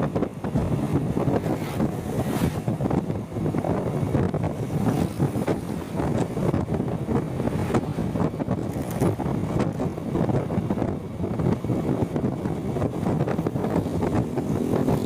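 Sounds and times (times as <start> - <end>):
road and traffic noise: 0.0 - 15.0
wind buffeting microphone: 0.0 - 15.0.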